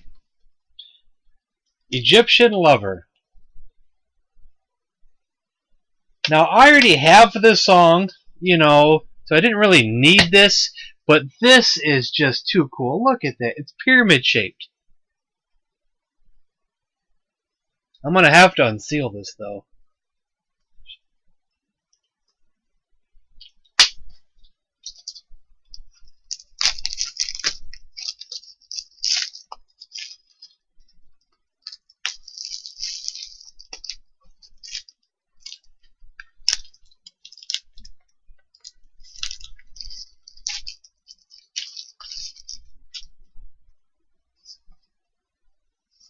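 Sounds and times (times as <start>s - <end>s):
plastic wrap crinkling: 24.4s - 43.8s
plastic wrap snapping: 26.3s - 30.6s.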